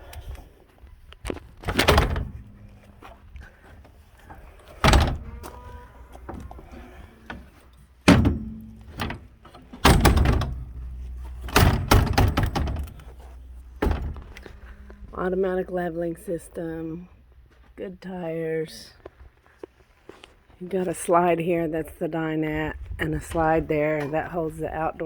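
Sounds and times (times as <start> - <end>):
metal steps thunking: 1.6 - 15.0
low rumbling: 1.7 - 7.2, 8.1 - 17.8.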